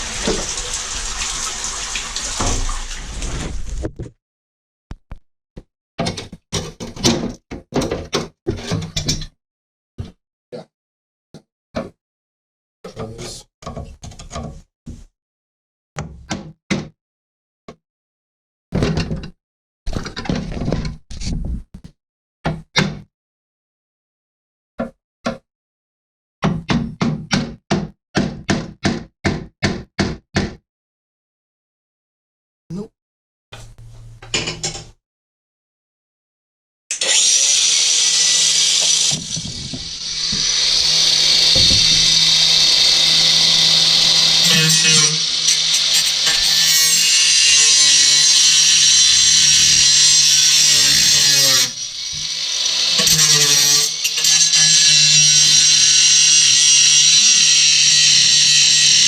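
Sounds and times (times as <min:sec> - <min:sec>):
power tool motor whine: 0:36.9 - 0:59.0
hard knocks: 0:41.5 - 0:42.3.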